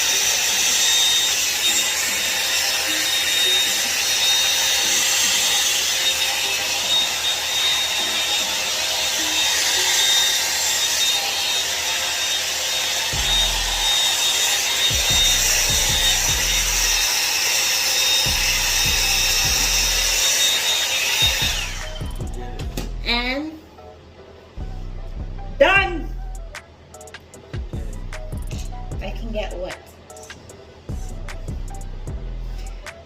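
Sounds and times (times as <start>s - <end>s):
hair dryer blowing with motor whine: 0.0s - 22.9s.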